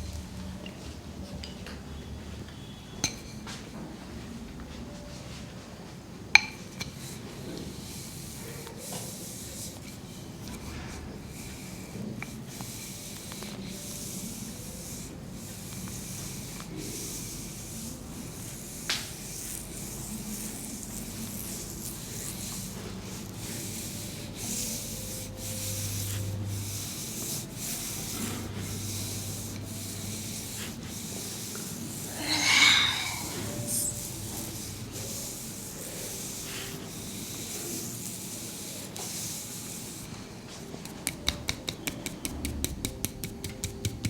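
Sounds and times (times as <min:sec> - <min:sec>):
hands rubbing skin in massage: 0:08.8 - 0:44.0.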